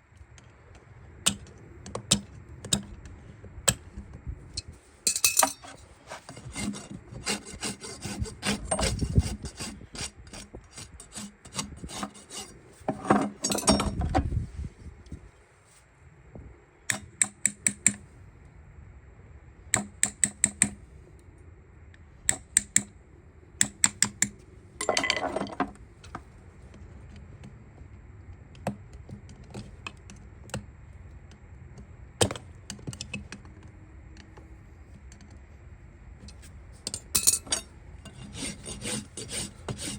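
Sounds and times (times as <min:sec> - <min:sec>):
rasp filing a hoof: 0:05.6 - 0:13.4, 0:38.1 - 0:39.9.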